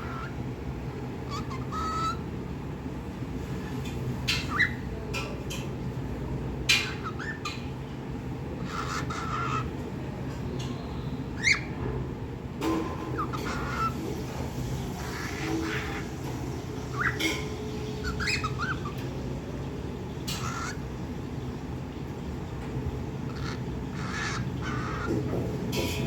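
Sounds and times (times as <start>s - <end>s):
cockatiel squawking and chirping: 0.0s - 0.4s, 1.2s - 2.3s, 4.2s - 4.9s, 6.7s - 7.7s, 8.6s - 9.8s, 11.4s - 11.8s, 12.6s - 19.1s, 20.2s - 21.0s, 23.2s - 25.4s
steady low hum: 0.0s - 26.0s.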